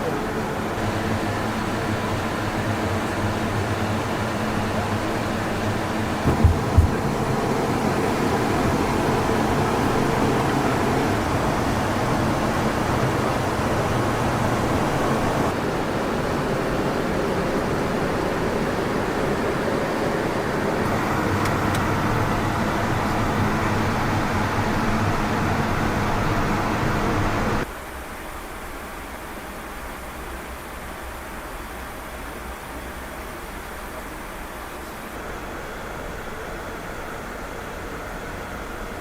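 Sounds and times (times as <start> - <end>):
jet engines roaring: 0.0 - 27.7.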